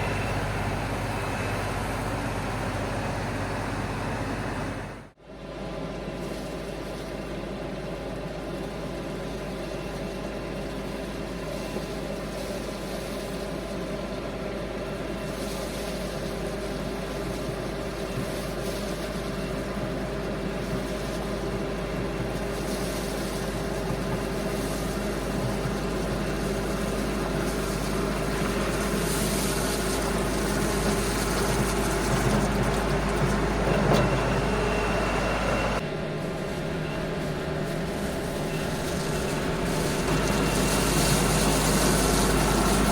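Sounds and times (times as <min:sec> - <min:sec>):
tractor diesel engine running: 0:00.0 - 0:05.2, 0:14.4 - 0:42.9
rushing hiss: 0:36.2 - 0:42.9.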